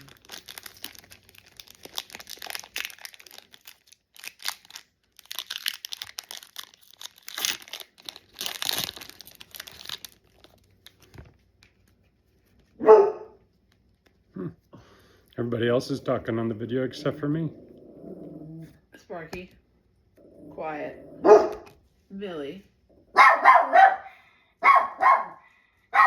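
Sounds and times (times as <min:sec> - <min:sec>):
foil wrappers crinkling: 0:00.0 - 0:12.8
dog bark: 0:12.8 - 0:13.4, 0:21.2 - 0:21.7, 0:23.1 - 0:26.0.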